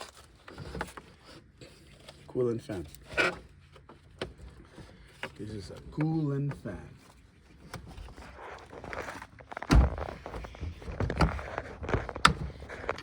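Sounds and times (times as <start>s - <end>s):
parts rustling and clunking: 0.0s - 13.0s.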